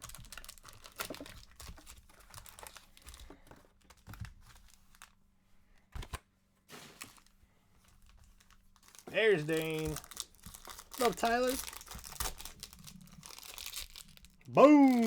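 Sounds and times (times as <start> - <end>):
card packaging crinkling and tearing: 0.0 - 3.2, 3.8 - 5.2, 7.9 - 15.0.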